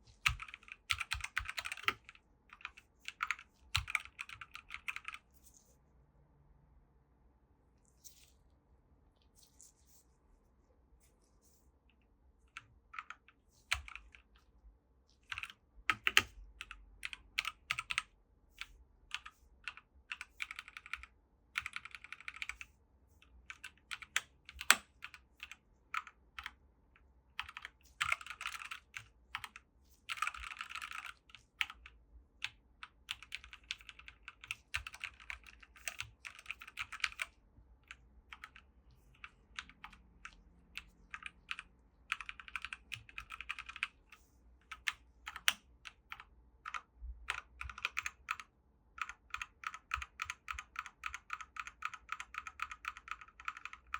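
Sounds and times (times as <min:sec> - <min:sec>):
mechanical keyboard typing: 0:00.2 - 0:05.3, 0:12.5 - 0:14.3, 0:15.2 - 0:18.1, 0:19.1 - 0:22.6, 0:23.5 - 0:26.6, 0:27.4 - 0:44.0, 0:44.7 - 0:53.9.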